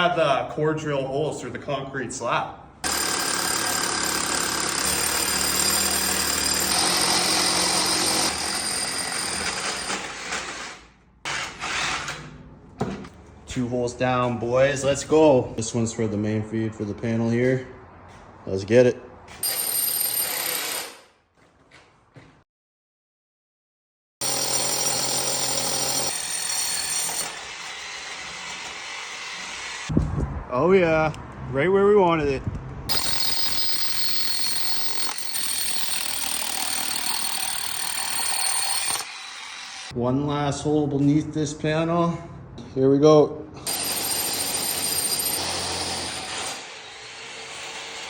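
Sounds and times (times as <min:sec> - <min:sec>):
core drill boring through concrete: 0:02.8 - 0:10.8, 0:19.5 - 0:21.0, 0:24.2 - 0:29.9, 0:32.9 - 0:40.0, 0:43.6 - 0:48.0.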